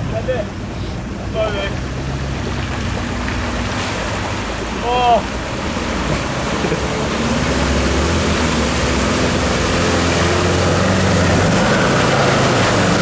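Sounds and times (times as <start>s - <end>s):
off-road vehicle engine running: 0.0s - 13.0s.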